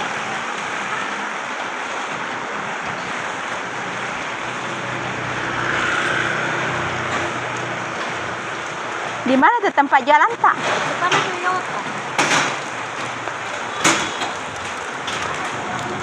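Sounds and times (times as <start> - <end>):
rain hissing: 0.0 - 16.0
traffic on wet road: 0.0 - 16.0
vehicle passing: 3.1 - 12.2.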